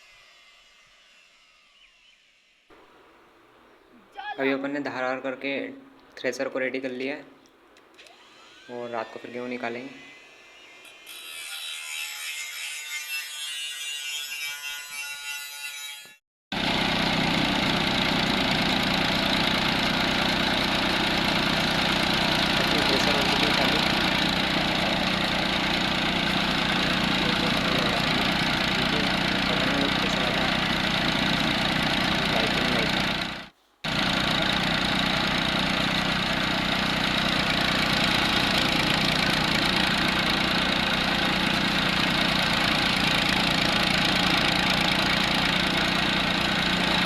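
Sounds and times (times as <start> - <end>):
tractor diesel engine running: 16.6 - 47.0.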